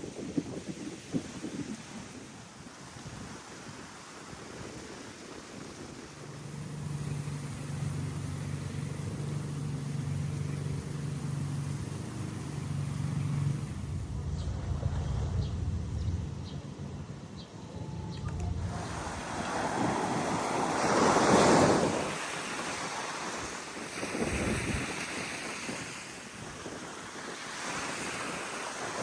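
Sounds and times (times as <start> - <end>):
wind noise: 0.0 - 29.0
vehicle engine running: 5.9 - 20.2.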